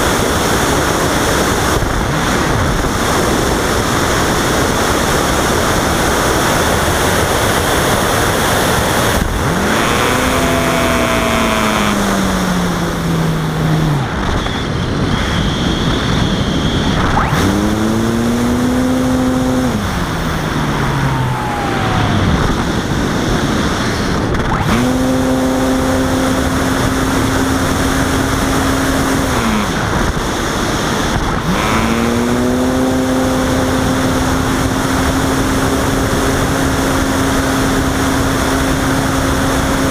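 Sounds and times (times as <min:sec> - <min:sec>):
airflow rushing on microphone: 0:00.0 - 0:25.2
electric motor and propeller whine: 0:00.0 - 0:39.9.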